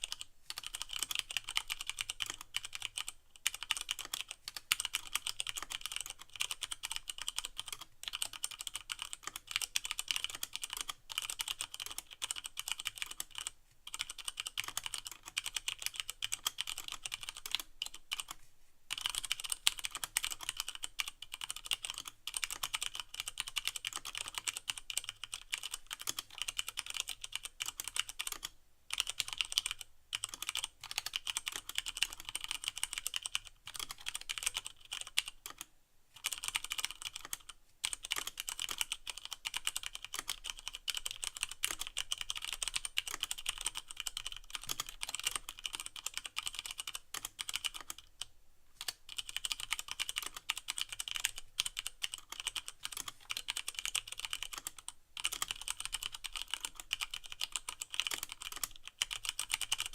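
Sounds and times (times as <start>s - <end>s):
mechanical keyboard typing: 0.0s - 59.9s.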